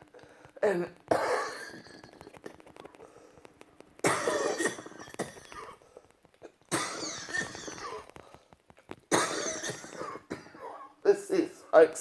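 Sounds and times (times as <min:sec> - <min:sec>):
woman coughing harshly: 0:00.7 - 0:02.0, 0:04.1 - 0:05.8, 0:06.7 - 0:08.1, 0:09.1 - 0:11.0.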